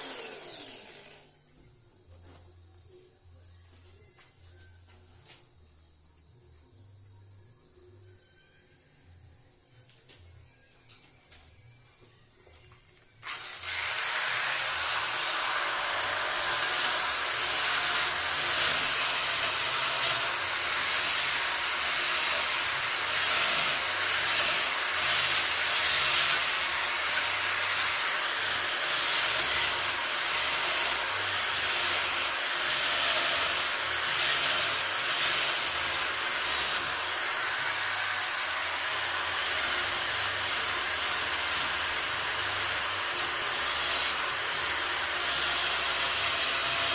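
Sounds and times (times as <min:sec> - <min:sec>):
power carving tool grinding wood: 0:00.0 - 0:01.2, 0:13.2 - 0:46.9.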